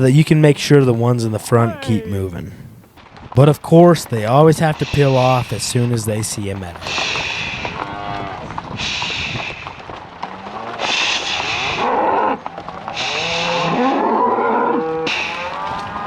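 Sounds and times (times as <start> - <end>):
cattle bawling and mooing: 10.3 - 16.0.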